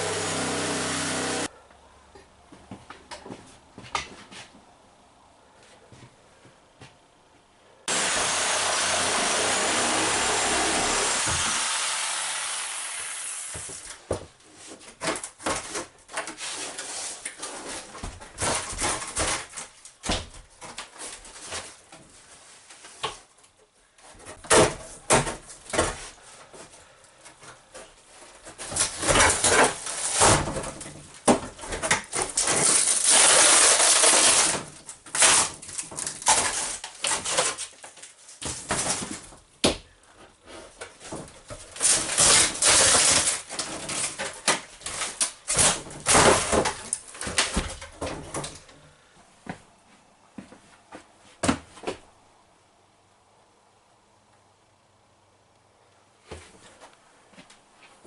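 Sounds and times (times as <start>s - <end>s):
power tool running: 0.0s - 1.5s, 7.9s - 13.8s
knocks and scrapes of building work: 0.0s - 4.7s, 13.4s - 52.1s, 56.2s - 58.0s.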